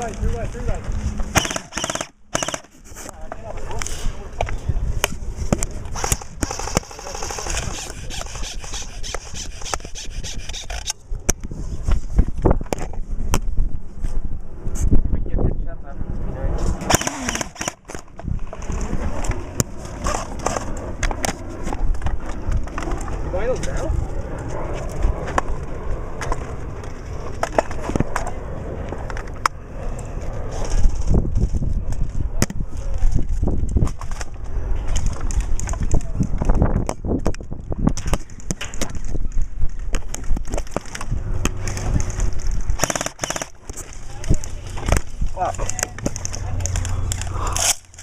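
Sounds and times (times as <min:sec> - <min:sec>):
camera handling noise: 0:01.2 - 0:03.9, 0:05.0 - 0:11.5, 0:16.9 - 0:18.8, 0:34.9 - 0:48.0
sharp clicks: 0:01.3 - 0:02.7, 0:16.9 - 0:18.0, 0:42.8 - 0:43.8
rubbing on camera microphone: 0:05.3 - 0:10.9.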